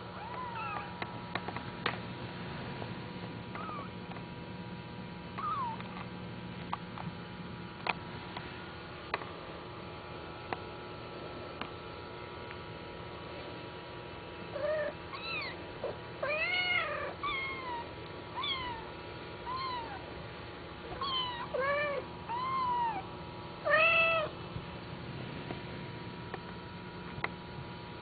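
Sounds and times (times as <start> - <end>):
faint hum: 0.0 - 28.0
kittens mewing: 3.5 - 4.0, 5.4 - 5.9, 14.5 - 20.2, 20.8 - 24.4.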